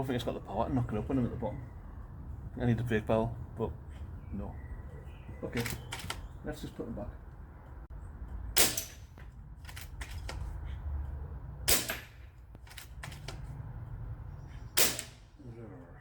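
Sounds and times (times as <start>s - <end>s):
air rifle shots: 8.6s - 10.3s, 11.7s - 13.3s, 14.8s - 15.3s.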